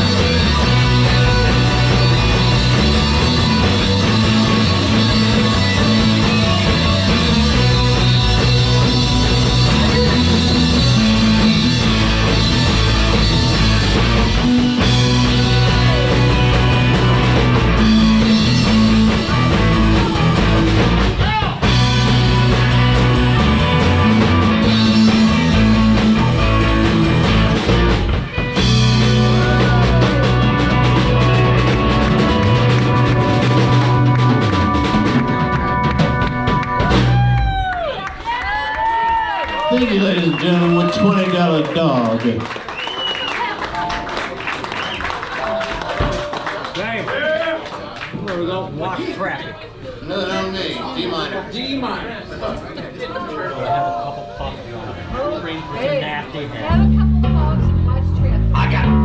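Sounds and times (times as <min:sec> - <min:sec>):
live rock band playing: 0:00.0 - 0:37.8, 0:43.0 - 0:46.7, 0:56.7 - 0:59.0
electric guitar: 0:00.0 - 0:38.0.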